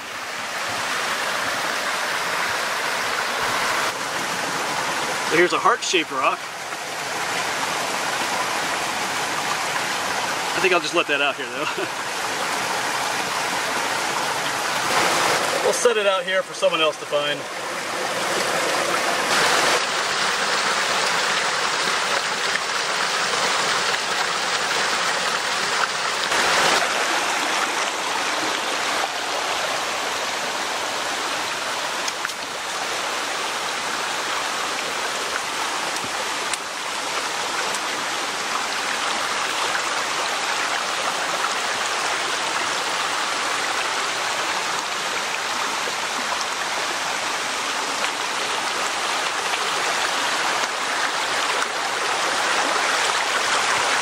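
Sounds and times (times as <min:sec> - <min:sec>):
stream rushing over rocks: 0:00.0 - 0:54.0.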